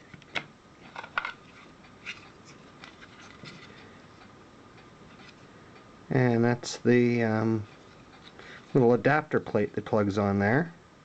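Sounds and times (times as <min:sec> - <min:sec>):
faint hiss: 0:05.0 - 0:11.0.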